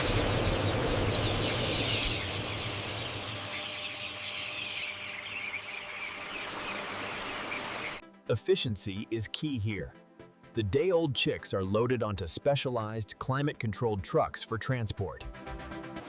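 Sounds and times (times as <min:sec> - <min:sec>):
chicks peeping: 0:00.0 - 0:08.0
low machine hum: 0:00.0 - 0:08.0.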